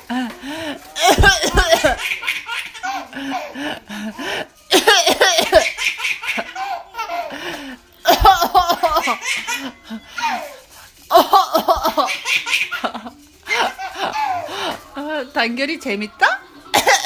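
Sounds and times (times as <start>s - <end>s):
babies giggling: 0.0s - 15.2s.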